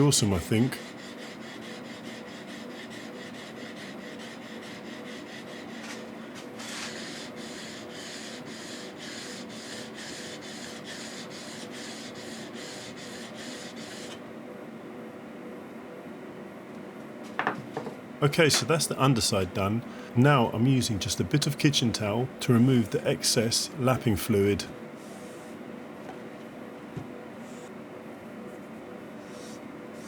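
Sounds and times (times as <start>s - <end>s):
chisel rubbed on sharpening stone: 0.8s - 14.2s.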